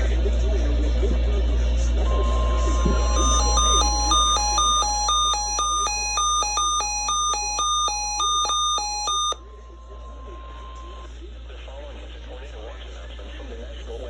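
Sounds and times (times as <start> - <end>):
two-pitch electronic beeps: 2.1 - 9.4
steady alert tone: 2.2 - 9.4.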